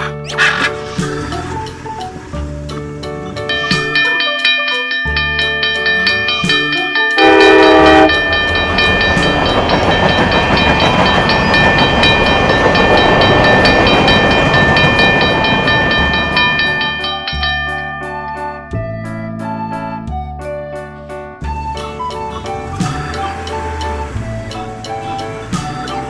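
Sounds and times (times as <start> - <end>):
children's music: 0.0 - 12.1, 13.5 - 26.0
train clattering: 0.1 - 19.0, 22.0 - 26.0
cartoon train toot: 7.2 - 8.4.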